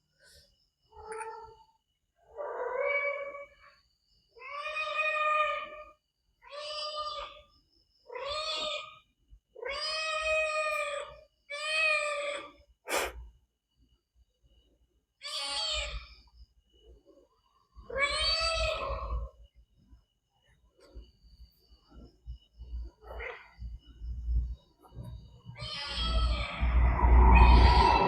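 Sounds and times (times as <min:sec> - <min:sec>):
cat meowing: 0:25.5 - 0:28.0.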